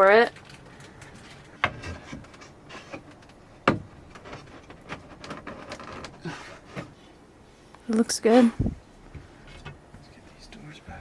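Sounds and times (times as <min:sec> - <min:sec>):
knocks and clicks of handling: 0:00.3 - 0:07.0.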